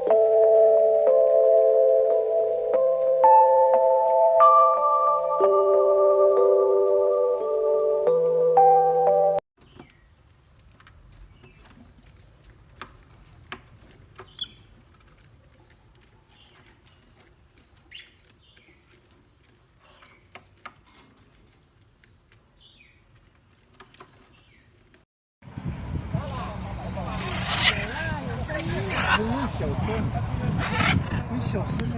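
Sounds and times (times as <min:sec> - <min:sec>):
bird chirps: 0:14.2 - 0:23.0.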